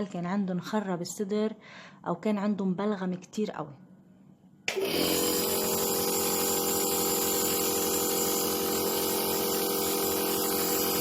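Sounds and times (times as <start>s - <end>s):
nebulizer compressor humming and hissing: 4.7s - 11.0s.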